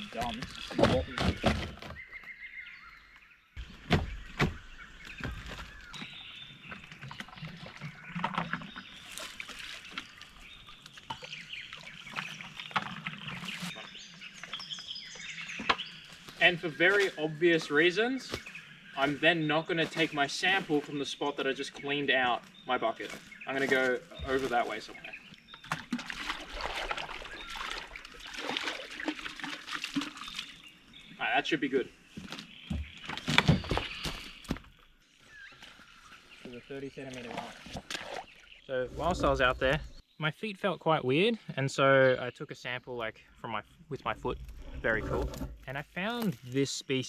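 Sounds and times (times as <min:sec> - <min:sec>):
water sloshing and splashing in bucket: 0:00.0 - 0:02.0, 0:03.6 - 0:14.6, 0:23.0 - 0:31.2, 0:35.6 - 0:40.0
bucket knocks: 0:00.1 - 0:02.0.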